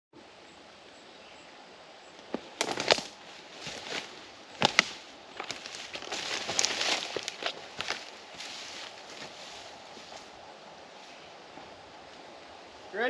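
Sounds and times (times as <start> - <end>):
footsteps crunching on dry brush: 2.3 - 11.8.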